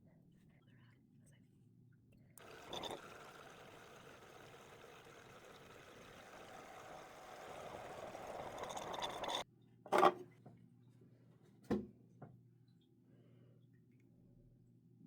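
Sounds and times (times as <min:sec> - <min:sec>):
water rushing in sinus rinse: 0:02.4 - 0:09.4.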